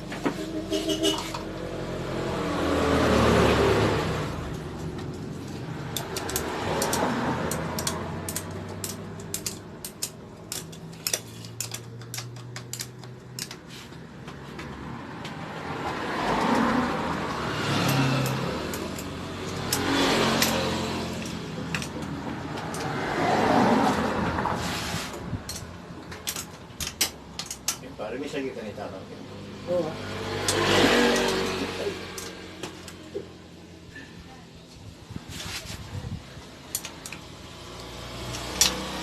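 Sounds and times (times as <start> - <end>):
vehicles passing by: 0.0 - 39.0
hand tools clicking on metal: 4.6 - 14.7, 17.8 - 23.0, 25.2 - 27.9, 30.4 - 33.2, 36.6 - 39.0.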